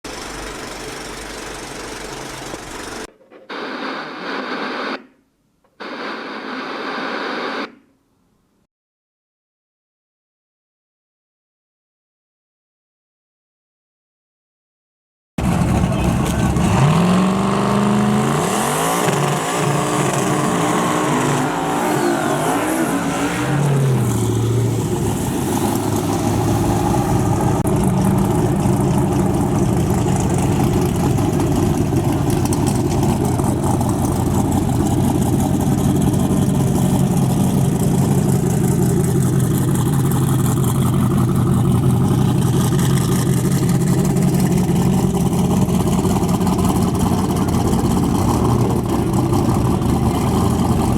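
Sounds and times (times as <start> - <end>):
car engine revving and idling: 0.1 - 3.1, 15.4 - 50.9.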